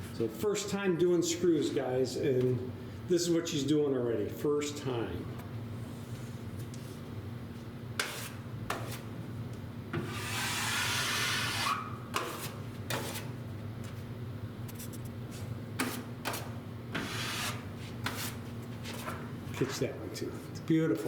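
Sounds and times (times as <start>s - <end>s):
drywall knife scraping: 8.0s - 9.1s, 10.0s - 13.4s, 15.8s - 19.2s.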